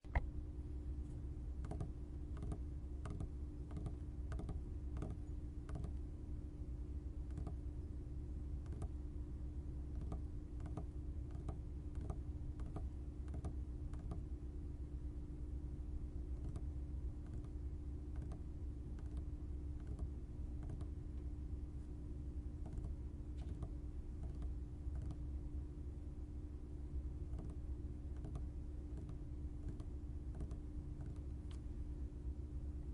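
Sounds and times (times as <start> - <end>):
steady low hum: 0.0 - 32.9
fingers rapping on tabletop: 1.6 - 6.0, 7.2 - 7.6, 8.6 - 9.0, 9.9 - 14.3, 16.3 - 21.0.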